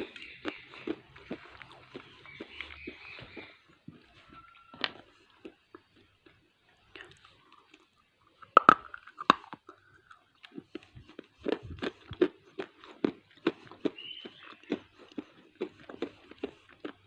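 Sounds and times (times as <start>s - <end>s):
chewing crunches: 0.0s - 17.0s
clay cracking when bitten: 7.0s - 17.0s.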